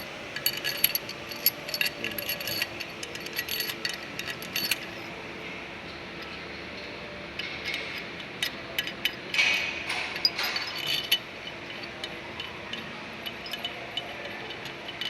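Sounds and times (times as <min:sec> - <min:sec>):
metal tools clinking on engine parts: 0:00.0 - 0:05.2, 0:06.2 - 0:15.0.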